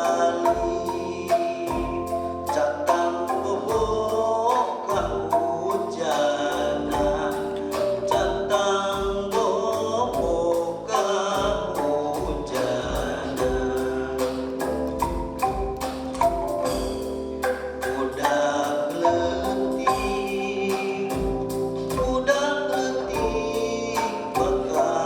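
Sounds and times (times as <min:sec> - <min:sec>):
person singing: 0:00.0 - 0:16.8, 0:17.4 - 0:25.0
bamboo xylophone playing: 0:00.0 - 0:25.0
deep thumps: 0:11.4 - 0:18.0.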